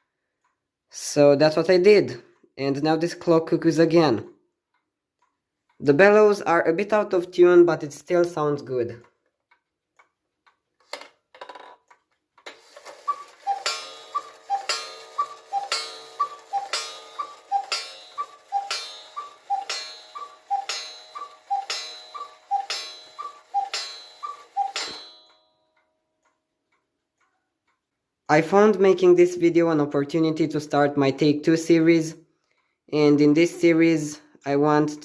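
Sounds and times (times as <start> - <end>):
clock mechanism clicks: 8.2 - 28.9
two-note cuckoo calls: 12.9 - 25.3
clock gong ringing: 13.0 - 25.6.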